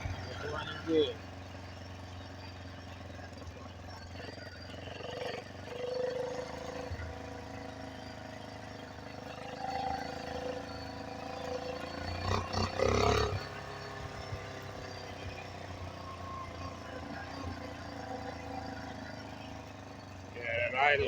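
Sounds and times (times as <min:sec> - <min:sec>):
motorized bicycle engine running: 0:00.0 - 0:21.0.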